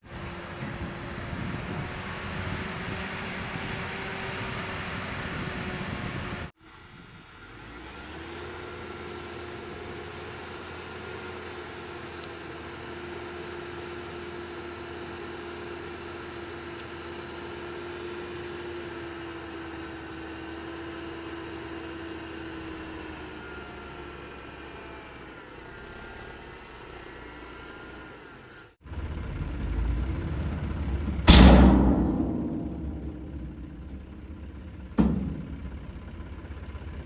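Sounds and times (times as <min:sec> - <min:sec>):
diesel engine running: 0:00.0 - 0:06.5, 0:17.3 - 0:37.0
held whine: 0:28.9 - 0:37.0
low rumble: 0:28.9 - 0:37.0.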